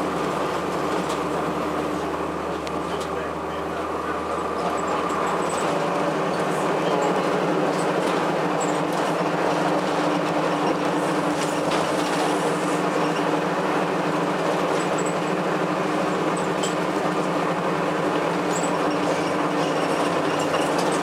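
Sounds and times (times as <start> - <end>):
road noise: 0.0 - 14.3
bus diesel engine running: 0.0 - 21.0.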